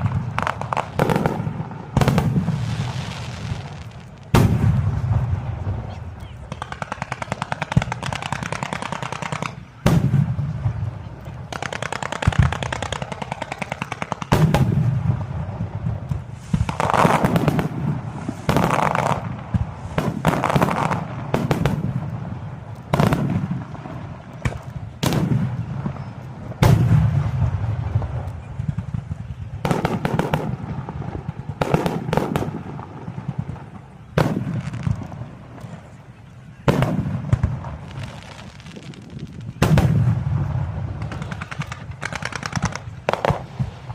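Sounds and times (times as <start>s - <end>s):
low rolling boom: 0.0s - 7.3s
firework crackling: 0.0s - 43.9s
firework shells bursting: 36.6s - 43.9s.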